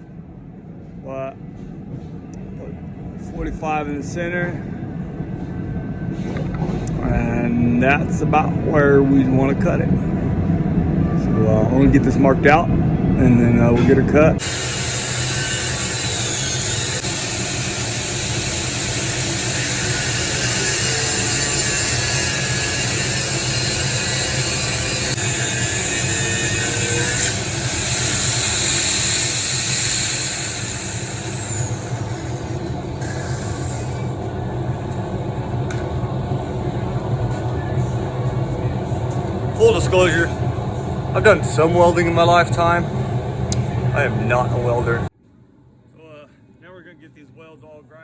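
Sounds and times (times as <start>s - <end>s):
power tool cutting steel: 14.4s - 34.2s.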